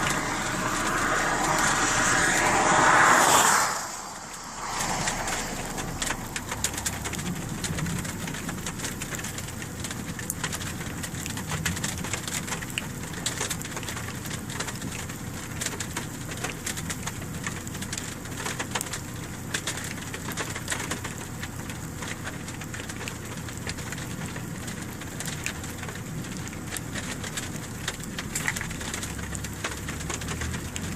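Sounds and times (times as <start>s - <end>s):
steady low hum: 0.0s - 9.1s
rain pattering: 0.0s - 30.9s.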